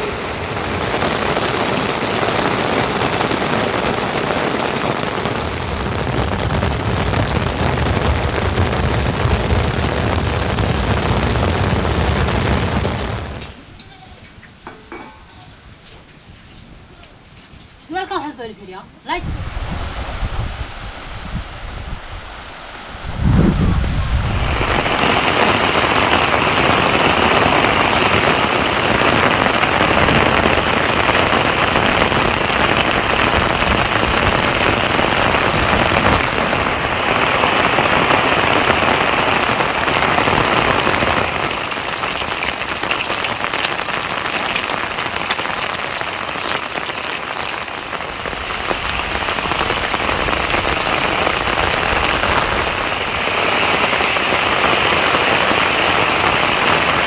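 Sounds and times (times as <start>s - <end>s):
rain hissing: 0.0s - 13.6s, 19.1s - 57.0s.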